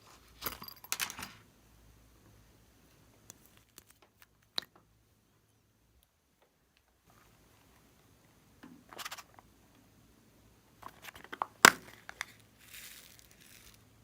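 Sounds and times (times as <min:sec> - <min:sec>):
hands crinkling slime and plastic bags: 0:11.4 - 0:14.0.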